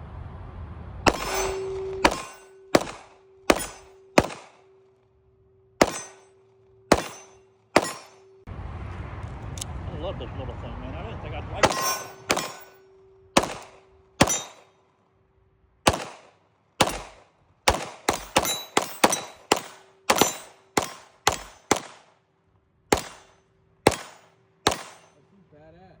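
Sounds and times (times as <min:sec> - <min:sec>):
gunshots with echoing tail: 0:01.1 - 0:04.8, 0:05.8 - 0:06.3, 0:06.9 - 0:08.3, 0:11.6 - 0:12.8, 0:13.4 - 0:14.7, 0:15.9 - 0:22.2, 0:22.9 - 0:25.2.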